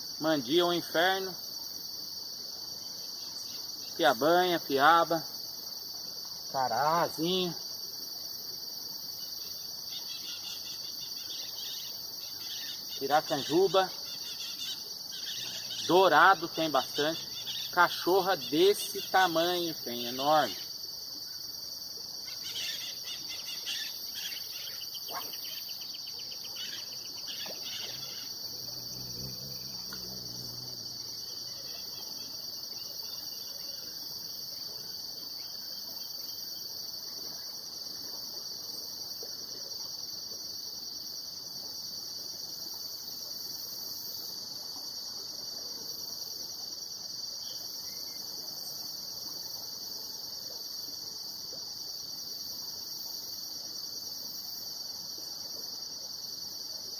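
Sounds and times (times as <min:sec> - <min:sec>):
insects chirring: 0:00.0 - 0:56.9.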